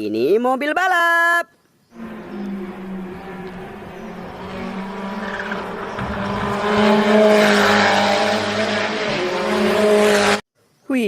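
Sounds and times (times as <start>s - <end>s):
tyre squeal: 2.0s - 8.5s
race car engine: 2.0s - 10.4s.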